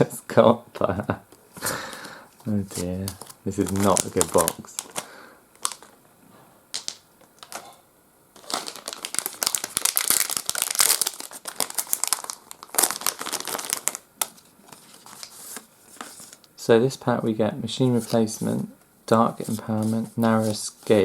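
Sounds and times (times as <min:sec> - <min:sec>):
wrapper tearing and crinkling: 0:02.6 - 0:06.0, 0:08.4 - 0:15.6.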